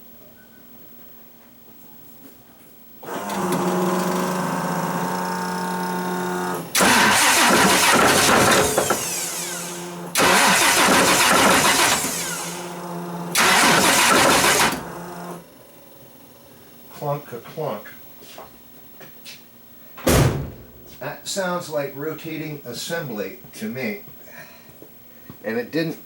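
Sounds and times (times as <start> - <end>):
car engine starting and idling: 3.2 - 15.4
engine revving with knocking: 6.8 - 12.8, 13.4 - 15.0.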